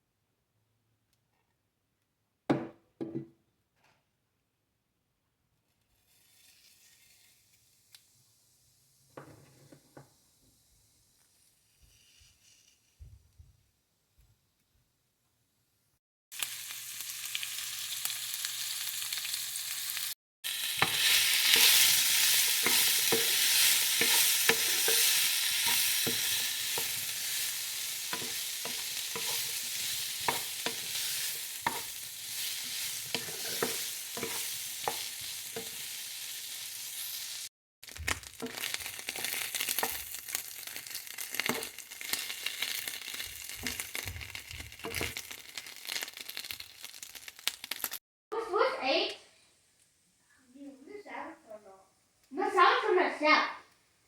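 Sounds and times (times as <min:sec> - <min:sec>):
sausages sizzling in a pan: 0:06.0 - 0:12.8, 0:16.3 - 0:48.0
utensil clicking in a pan: 0:37.8 - 0:48.0.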